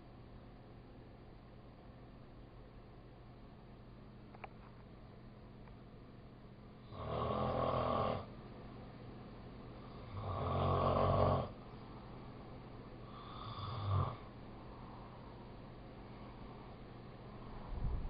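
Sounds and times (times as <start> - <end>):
animal snoring: 6.9 - 8.3, 9.8 - 11.6, 13.1 - 14.3.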